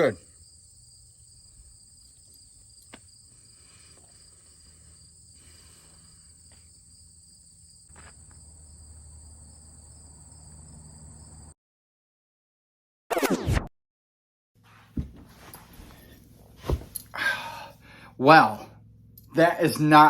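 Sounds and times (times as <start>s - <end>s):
high-pitched insect chorus: 0.0s - 11.5s.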